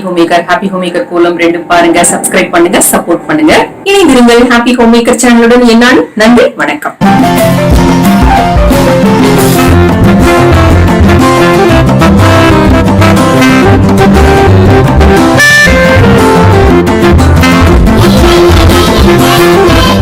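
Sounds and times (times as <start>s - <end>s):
upbeat instrumental music: 7.0s - 20.0s.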